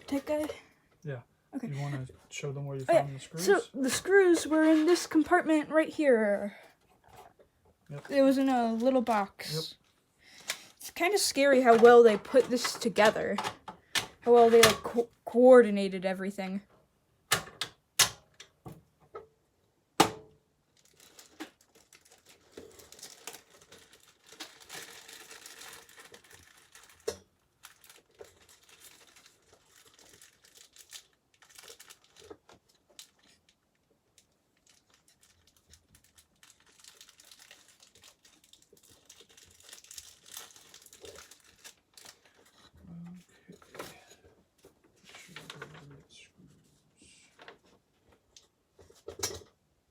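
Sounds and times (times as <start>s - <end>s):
packaging crinkling: 20.7s - 42.7s.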